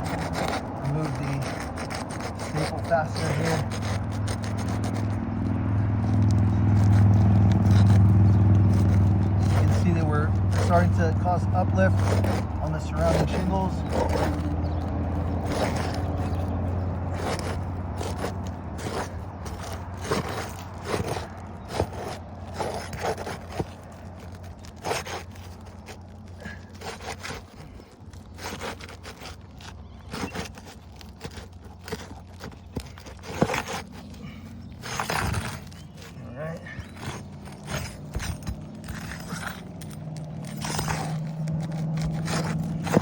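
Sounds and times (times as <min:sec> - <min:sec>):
tool scraping under shingles: 0:00.0 - 0:43.0.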